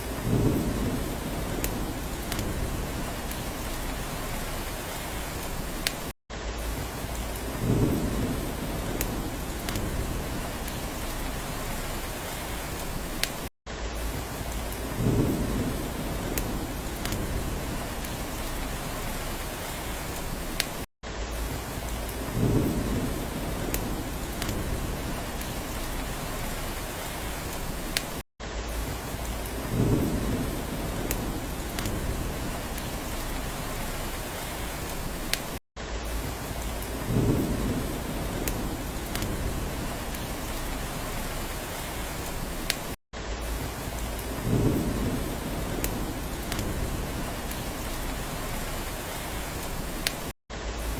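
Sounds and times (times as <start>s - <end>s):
low thunder rumble: 0.0s - 5.5s, 6.6s - 12.6s, 14.0s - 20.2s, 21.3s - 27.8s, 28.7s - 35.2s, 36.1s - 42.6s, 43.4s - 49.7s
rain on a roof: 0.0s - 50.9s
water drips ticking: 45.5s - 46.8s.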